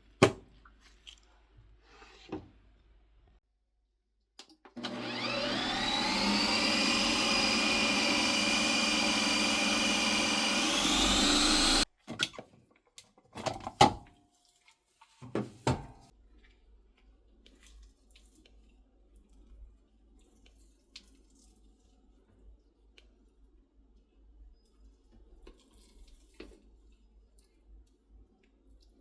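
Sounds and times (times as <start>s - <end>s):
hand blender motor whining: 4.8s - 11.8s.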